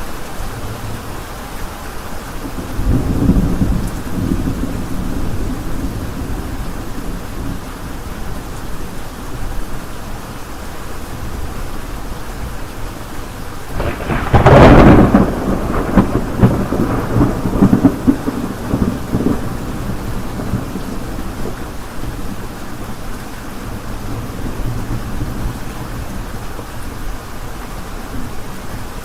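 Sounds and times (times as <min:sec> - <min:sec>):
steady rain: 0:00.0 - 0:29.0
thunderclap and rumbling: 0:02.6 - 0:08.2, 0:13.7 - 0:21.7.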